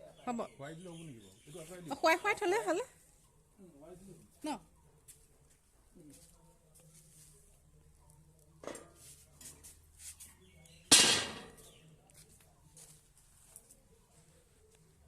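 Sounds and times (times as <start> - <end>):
metal grill clanging: 10.9 - 11.7.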